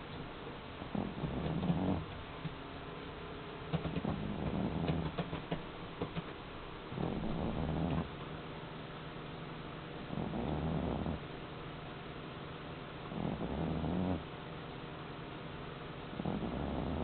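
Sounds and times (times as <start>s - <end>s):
cat snoring: 0.8s - 2.1s, 3.8s - 5.3s, 6.9s - 8.2s, 10.0s - 11.3s, 13.1s - 14.3s, 16.1s - 17.0s.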